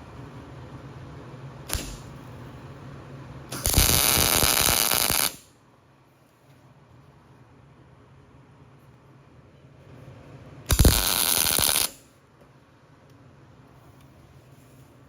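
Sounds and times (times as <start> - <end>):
sharp click: 1.7 - 2.1
welding arc crackling: 1.7 - 2.1, 3.5 - 5.5, 10.7 - 12.1.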